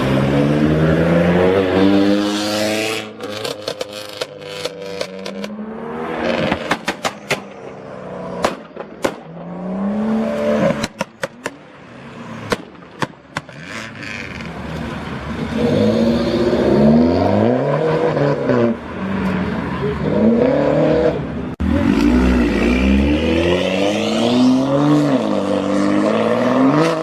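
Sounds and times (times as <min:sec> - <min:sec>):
performance car engine revving: 0:00.0 - 0:06.8, 0:13.4 - 0:27.0.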